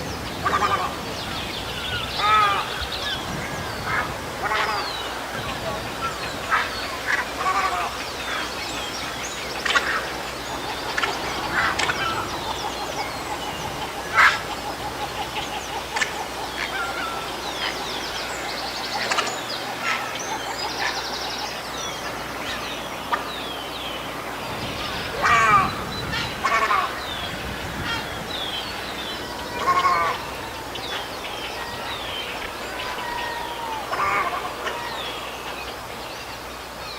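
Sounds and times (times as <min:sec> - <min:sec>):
heron calling: 0:00.0 - 0:35.8
birds chirping and trilling: 0:00.0 - 0:36.9.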